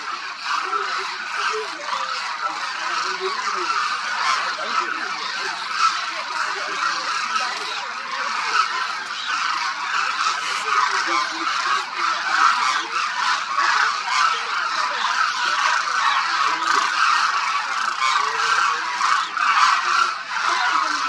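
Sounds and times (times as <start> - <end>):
flock of cranes calling: 0.0 - 21.0.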